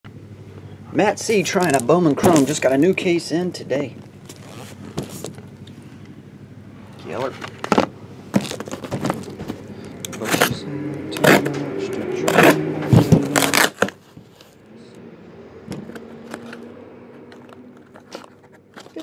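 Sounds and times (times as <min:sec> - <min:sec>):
cardboard box handling: 0:04.3 - 0:05.5, 0:07.2 - 0:10.6, 0:17.4 - 0:19.0
cardboard tearing: 0:12.2 - 0:14.6.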